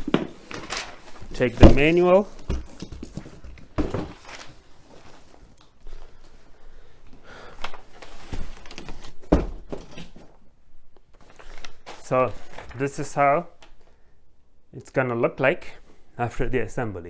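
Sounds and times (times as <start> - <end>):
faint room noise: 0.0 - 17.0
dull thuds and knocks: 1.4 - 4.3, 9.2 - 10.3.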